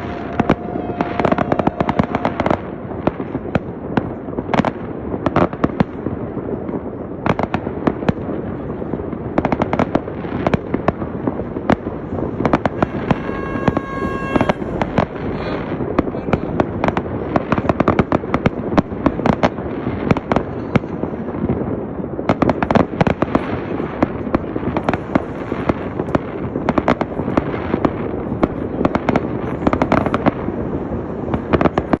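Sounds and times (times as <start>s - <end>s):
fireworks bangs and crackling: 0.0s - 32.0s
steady pitched tone: 12.1s - 16.8s.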